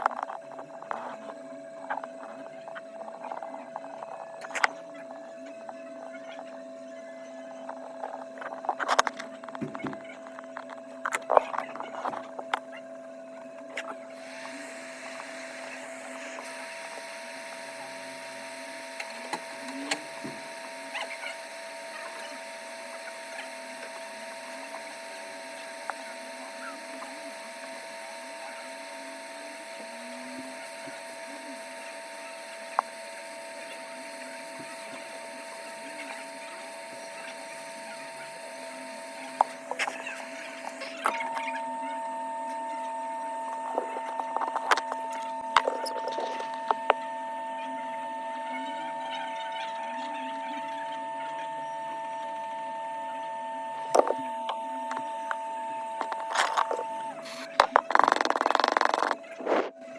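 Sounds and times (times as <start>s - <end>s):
electrical hum: 0.0s - 59.9s
hot air blower: 14.1s - 45.8s, 53.9s - 59.8s.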